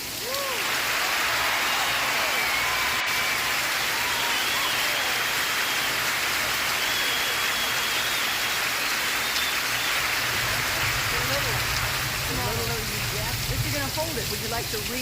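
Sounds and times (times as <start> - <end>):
steady rain falling: 0.0 - 15.0.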